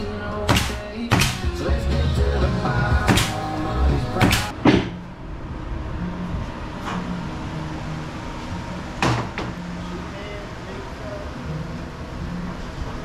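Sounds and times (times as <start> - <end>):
background music: 0.0 - 13.0
sharp knocks: 0.5 - 1.5, 3.1 - 3.4.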